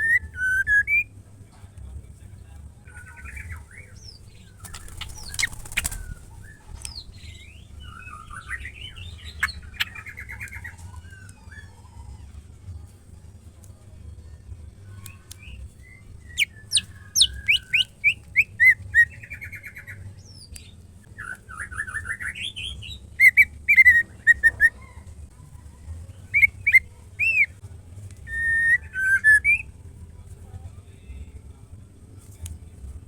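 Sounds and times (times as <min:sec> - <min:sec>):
bird whistling and chirping: 0:00.0 - 0:01.1, 0:15.4 - 0:20.0, 0:21.2 - 0:24.9, 0:26.3 - 0:27.6, 0:28.3 - 0:29.7.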